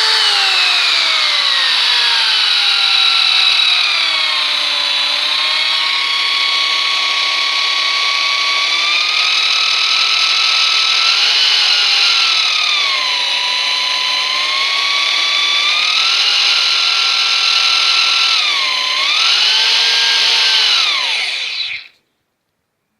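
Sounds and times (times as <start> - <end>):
electric drill whining: 0.0 - 22.0.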